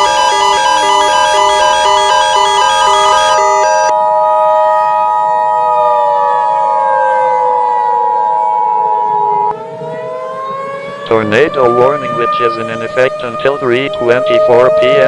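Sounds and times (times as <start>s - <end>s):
two-tone alert signal: 0.0s - 3.9s
civil defense siren winding down: 0.0s - 15.0s.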